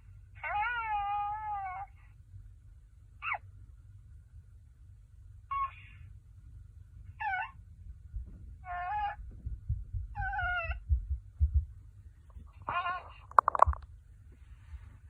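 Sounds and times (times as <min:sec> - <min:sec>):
toy baby-like coos and squeaks: 0:05.5 - 0:06.0, 0:12.6 - 0:13.8
low rumble: 0:06.6 - 0:15.0.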